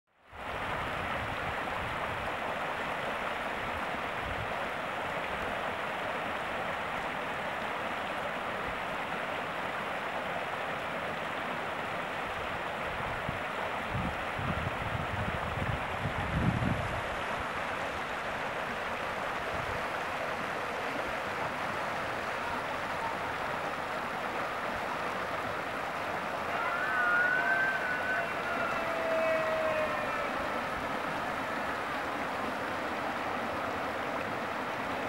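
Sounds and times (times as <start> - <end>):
creek water rushing: 0.1 - 35.0
wind gusts on microphone: 0.3 - 2.4, 12.9 - 17.6.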